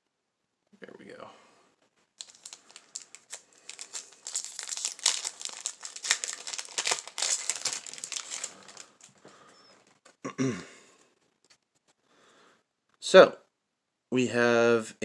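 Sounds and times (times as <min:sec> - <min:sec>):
foil wrapper crinkling: 0:02.2 - 0:10.1.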